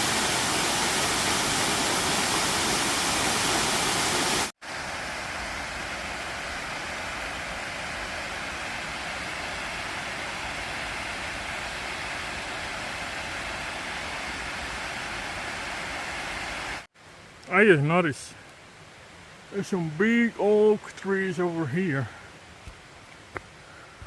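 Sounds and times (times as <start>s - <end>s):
waterfall rushing: 0.0s - 16.9s.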